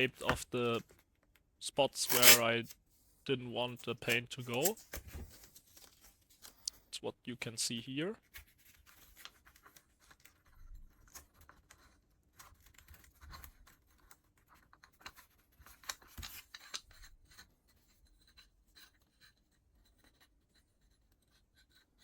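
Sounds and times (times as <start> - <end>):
masking tape pulled and torn: 2.0 - 2.5.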